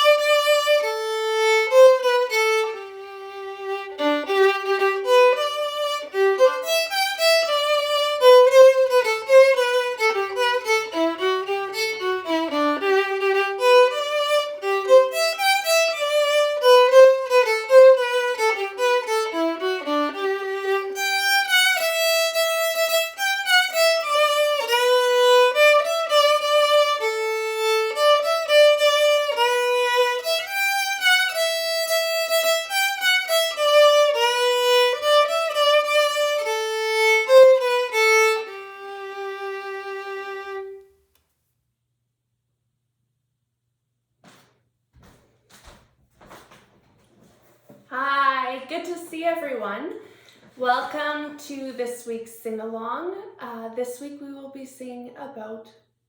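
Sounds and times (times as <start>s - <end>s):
solo instrumental melody: 0.0s - 41.0s.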